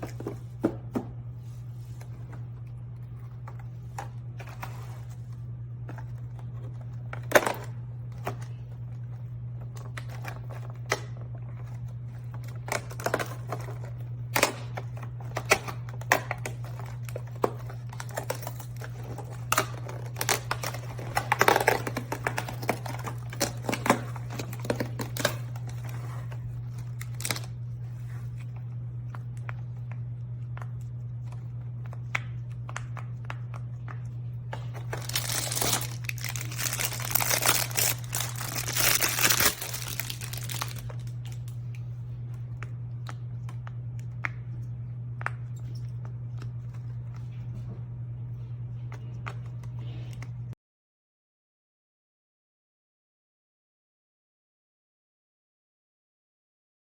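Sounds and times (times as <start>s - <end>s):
steady low hum: 0.0s - 50.6s
packaging crinkling: 9.6s - 28.5s, 34.5s - 41.6s.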